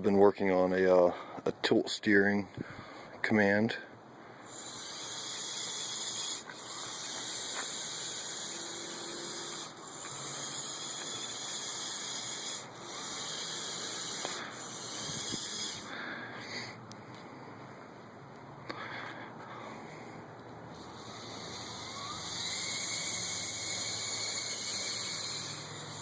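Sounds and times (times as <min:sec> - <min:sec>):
small electric motors whining: 0:04.4 - 0:16.8, 0:19.6 - 0:26.0.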